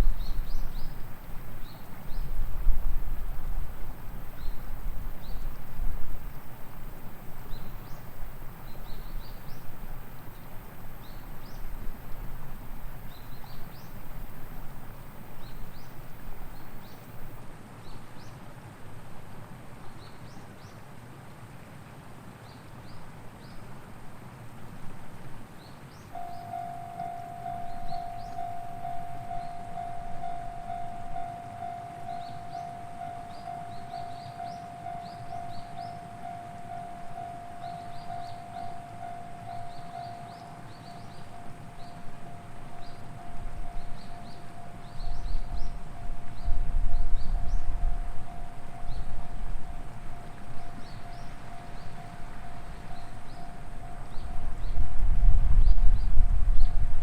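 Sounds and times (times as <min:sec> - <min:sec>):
faint high chirps: 0:26.1 - 0:54.8.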